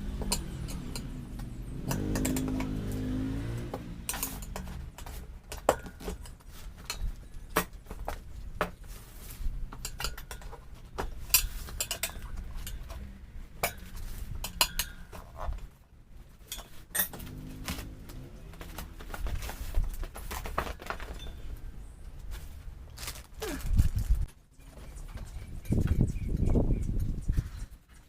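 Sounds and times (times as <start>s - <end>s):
metal tools clinking: 4.1s - 7.5s, 9.7s - 15.7s, 16.4s - 17.6s, 21.0s - 21.7s.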